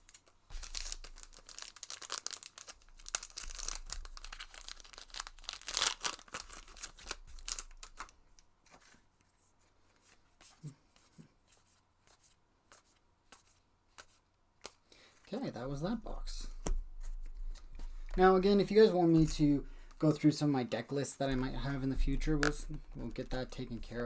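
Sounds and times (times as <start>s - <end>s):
foil wrapper tearing and crinkling: 0.0s - 8.1s.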